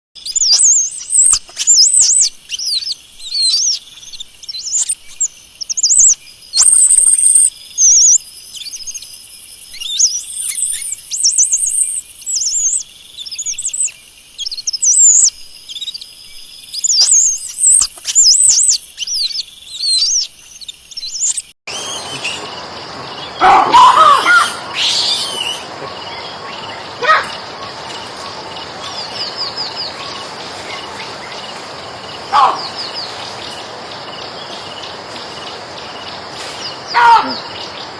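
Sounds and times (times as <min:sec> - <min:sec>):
monkeys chirping and whistling: 0:21.7 - 0:33.2
lower rough monkey calls: 0:21.7 - 0:33.6, 0:36.7 - 0:37.7.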